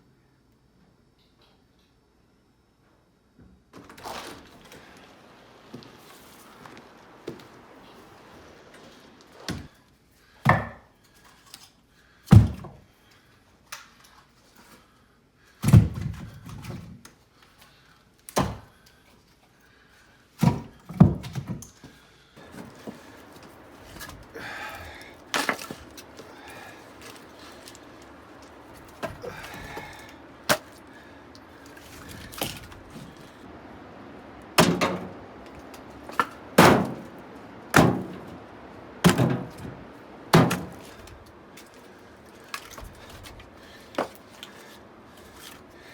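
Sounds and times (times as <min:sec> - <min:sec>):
wood scraping and shuffling: 0:03.8 - 0:09.7, 0:20.4 - 0:45.9
firewood knocking together: 0:10.4 - 0:10.8, 0:20.4 - 0:33.3, 0:34.6 - 0:41.3.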